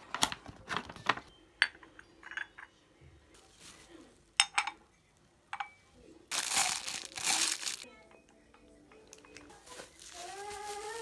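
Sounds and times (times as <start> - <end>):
tableware clinking: 1.6 - 2.8, 4.4 - 4.8.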